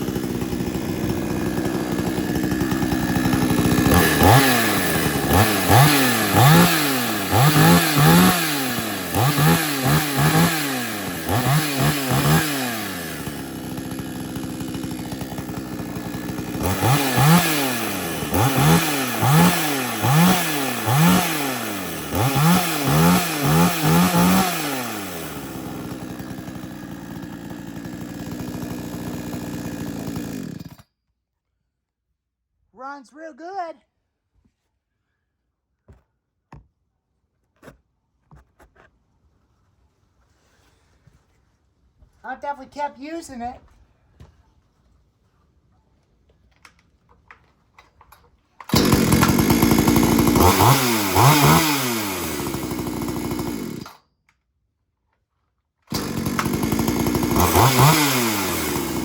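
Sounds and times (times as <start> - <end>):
chainsaw idling and revving: 0.0 - 30.9, 48.6 - 54.0, 55.9 - 59.0.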